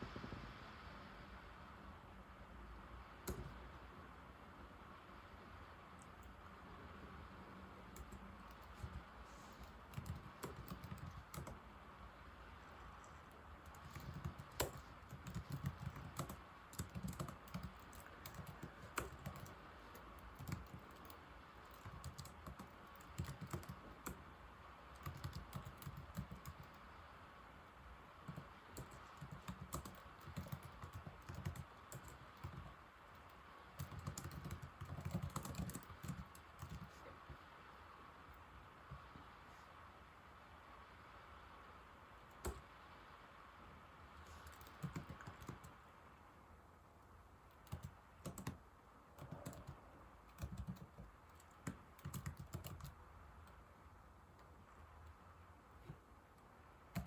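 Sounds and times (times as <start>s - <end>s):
laptop keyboard typing: 3.2s - 3.8s, 7.7s - 11.8s, 12.6s - 26.9s, 28.2s - 37.4s, 42.3s - 42.7s, 44.2s - 45.9s, 47.5s - 53.6s.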